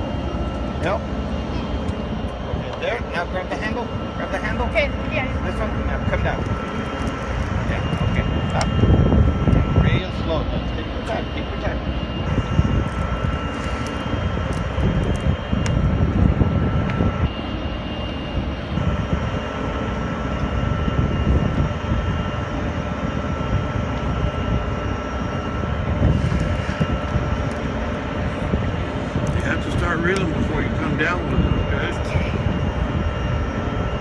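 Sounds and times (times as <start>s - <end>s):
heavy machinery drone: 0.0s - 34.0s
high whine: 0.0s - 34.0s.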